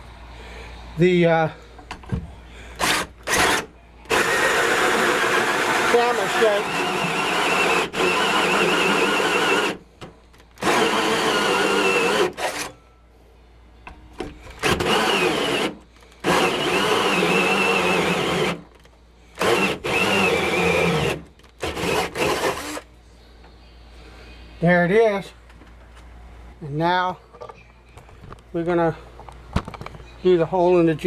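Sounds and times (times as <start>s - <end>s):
electric drill boring wood: 2.8s - 9.8s, 10.6s - 12.7s, 14.6s - 18.6s, 19.4s - 22.8s.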